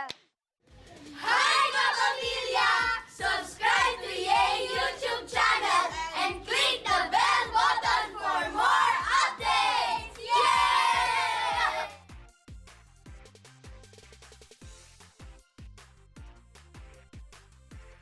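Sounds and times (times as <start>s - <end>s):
background music with steady beat: 0.7s - 18.0s
children singing and shouting: 1.0s - 12.0s.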